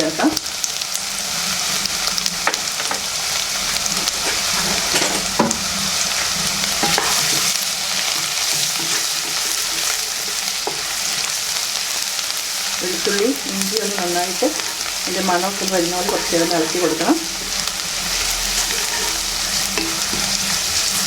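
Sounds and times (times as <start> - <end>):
food sizzling in hot oil: 0.0 - 21.0
spoon scraping and clicking on pan: 6.8 - 7.5, 8.2 - 11.3, 14.5 - 15.2, 16.0 - 20.6.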